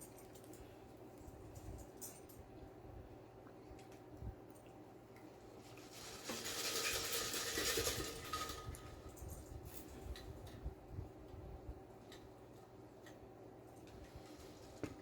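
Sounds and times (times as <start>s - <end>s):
rustling scrape: 5.5s - 10.1s, 14.0s - 15.0s.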